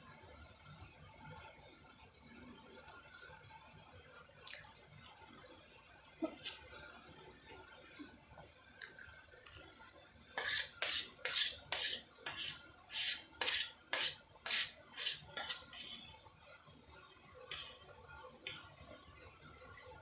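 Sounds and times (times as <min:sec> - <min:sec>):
utensil scraping a bowl: 0:10.4 - 0:16.2, 0:17.5 - 0:17.9.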